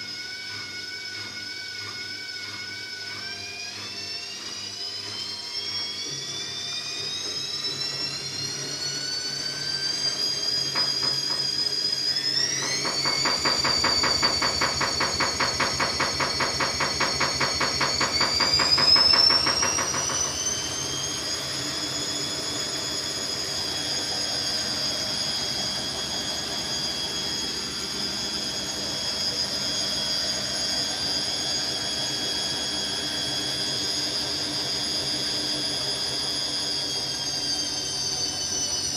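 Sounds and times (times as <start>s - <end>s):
washing machine motor whine: 0.0s - 38.9s.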